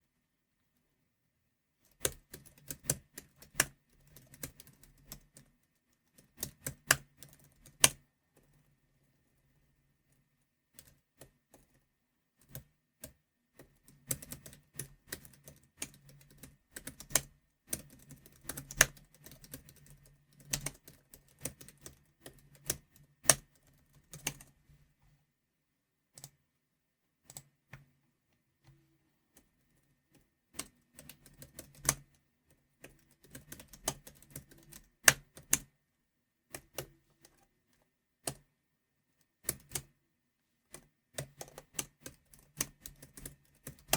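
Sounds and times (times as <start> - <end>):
typing on computer keyboard: 1.9 - 8.5, 12.4 - 24.5, 30.5 - 32.2, 32.8 - 35.7, 39.4 - 39.9, 40.7 - 43.9.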